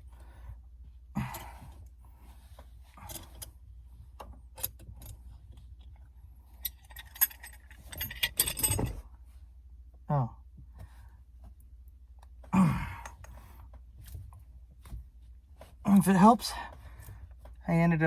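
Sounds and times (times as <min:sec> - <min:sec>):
metallic jingling and clinking: 0:06.6 - 0:09.0.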